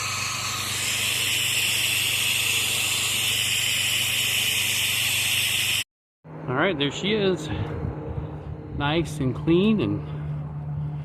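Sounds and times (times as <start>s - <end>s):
water jet hissing: 0.0s - 5.8s
pressure washer engine humming: 0.0s - 11.0s.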